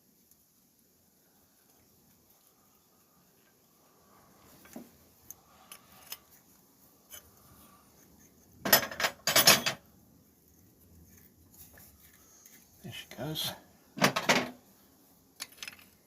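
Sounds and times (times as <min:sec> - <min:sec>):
metal tools clattering: 0:08.7 - 0:09.8.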